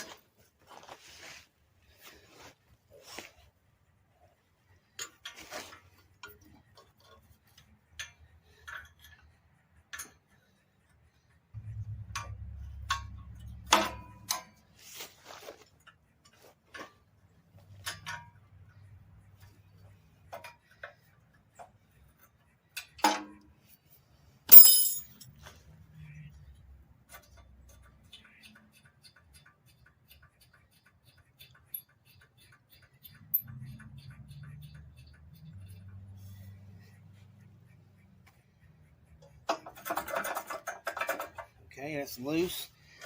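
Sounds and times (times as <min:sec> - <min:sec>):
wrench clicking on metal bolts: 0:06.2 - 0:10.4, 0:24.5 - 0:25.2, 0:27.1 - 0:36.1
low hum: 0:11.6 - 0:14.7
ringing metal clinks: 0:24.5 - 0:25.3.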